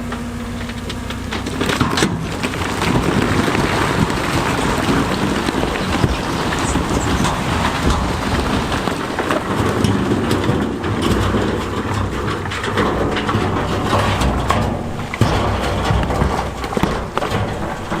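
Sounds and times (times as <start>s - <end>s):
big stones tumbling and grinding: 0.0s - 18.0s
heavy diesel machinery running: 0.0s - 18.0s.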